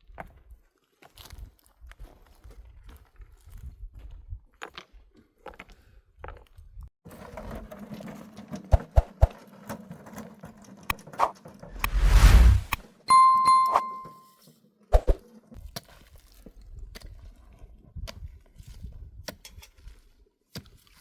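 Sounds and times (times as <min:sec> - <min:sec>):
loud whoosh: 0:11.7 - 0:12.8.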